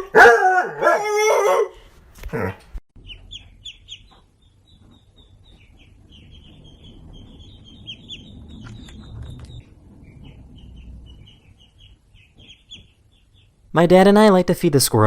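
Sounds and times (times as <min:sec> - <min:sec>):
small birds chirping: 0:03.0 - 0:14.0
low rumble: 0:04.6 - 0:13.7.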